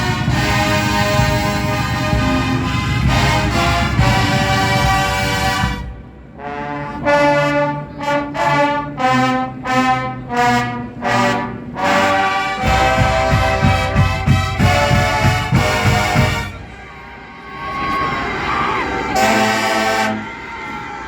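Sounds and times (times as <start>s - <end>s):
brass fanfare chords: 0.0s - 17.0s, 19.1s - 20.6s
fast drum beat: 12.6s - 16.6s.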